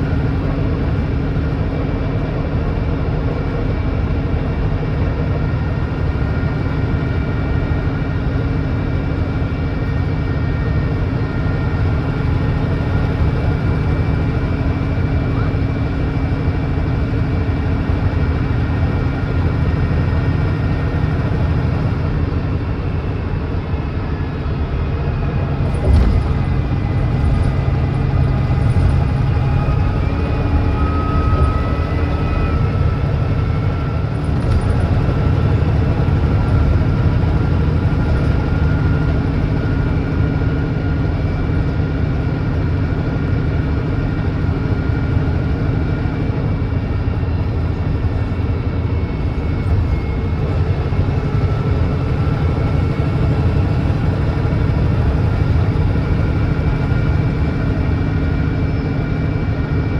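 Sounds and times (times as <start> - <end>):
bus diesel engine running: 0.0 - 59.9
thin rising whine: 10.2 - 40.2.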